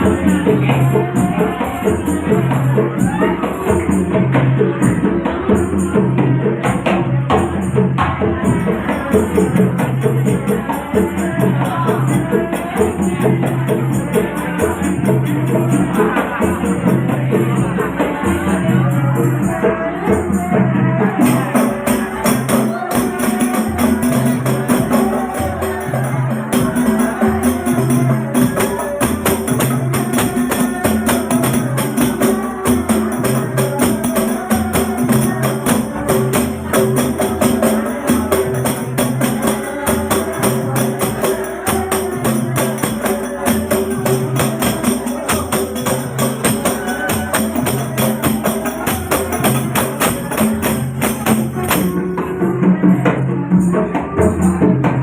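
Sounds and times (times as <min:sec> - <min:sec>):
frame drums playing fast rhythm: 0:00.0 - 0:55.0
deep drum beat: 0:20.4 - 0:55.0.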